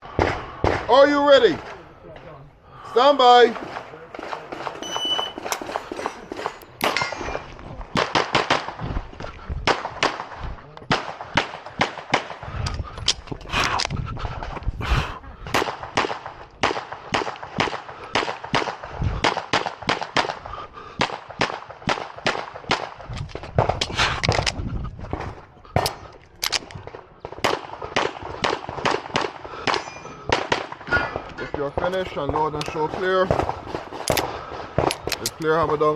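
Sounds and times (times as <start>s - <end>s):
pistol firing quick shots: 3.4s - 8.9s, 9.6s - 12.6s, 15.5s - 24.5s, 25.1s - 35.7s
steel targets clanging: 4.7s - 7.6s, 29.7s - 30.3s
shot timer beep: 4.8s - 5.4s.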